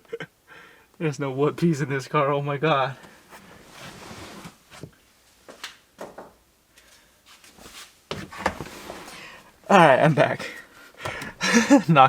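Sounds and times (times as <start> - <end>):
rustling of handling things: 3.0 - 9.5.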